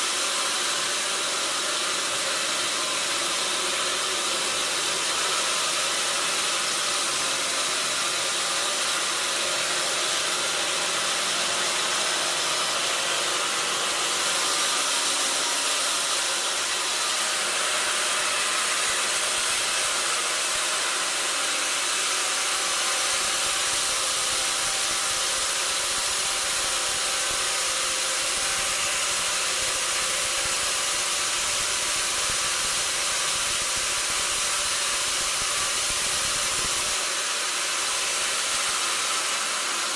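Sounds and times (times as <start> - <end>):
sawmill machinery running: 0.0 - 39.9.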